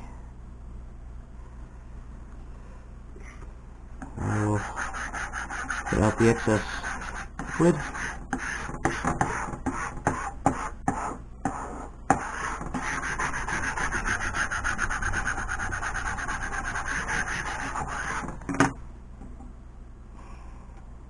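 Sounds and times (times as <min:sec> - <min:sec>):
rubbing vinyl decal on a sign: 0:04.2 - 0:18.4.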